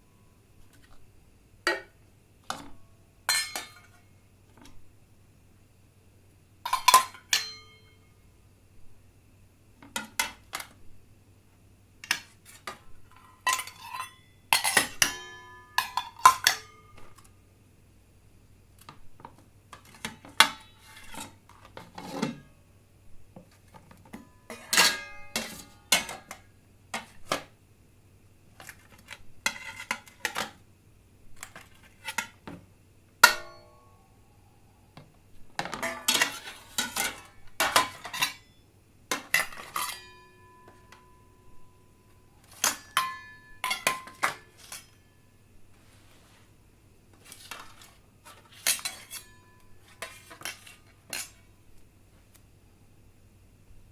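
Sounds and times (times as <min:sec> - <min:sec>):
glasses and plates clinking: 0:03.3 - 0:03.9, 0:24.5 - 0:26.1, 0:39.3 - 0:41.1, 0:42.6 - 0:45.1.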